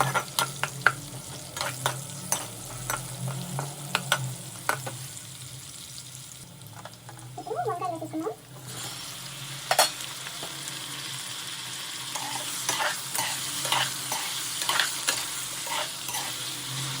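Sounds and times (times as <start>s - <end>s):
spoon scraping pan: 0.0s - 5.0s, 12.1s - 16.6s
vegetables sizzling in hot oil: 0.0s - 17.0s.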